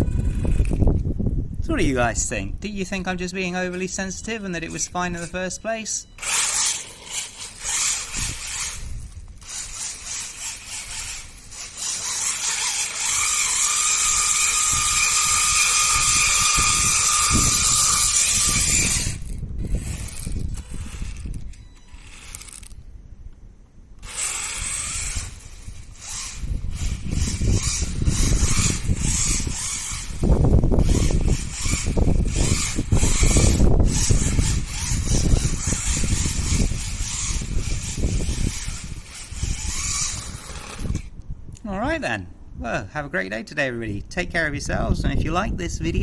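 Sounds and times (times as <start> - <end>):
toy car motor whine: 0.0 - 1.0, 6.2 - 22.8, 24.0 - 41.1.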